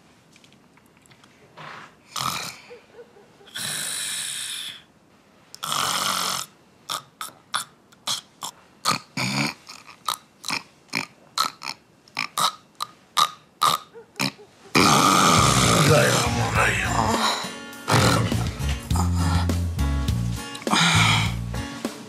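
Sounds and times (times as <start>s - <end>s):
woman snoring: 3.5s - 4.9s, 14.8s - 19.6s, 20.5s - 21.5s.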